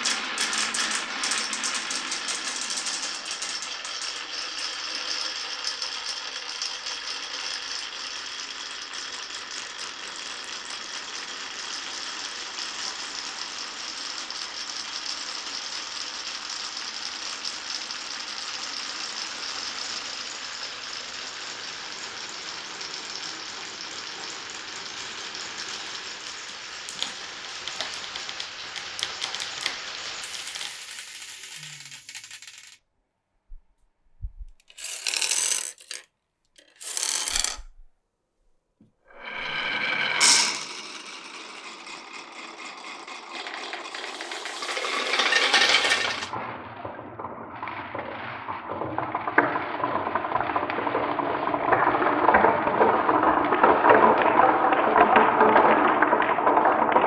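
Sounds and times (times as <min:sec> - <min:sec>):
marbles clicking: 0:00.0 - 0:32.8, 0:34.5 - 0:37.8, 0:39.2 - 0:46.4
marbles rolling on wooden run: 0:00.0 - 0:32.8, 0:34.4 - 0:37.9, 0:39.2 - 0:46.4.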